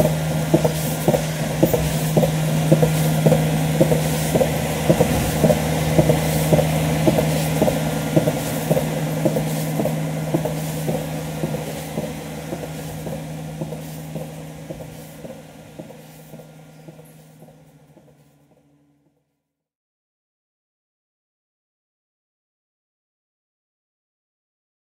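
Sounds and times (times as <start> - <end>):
pulsator rhythmic clicking: 0.0 - 18.7
milking machine hum: 0.0 - 19.2.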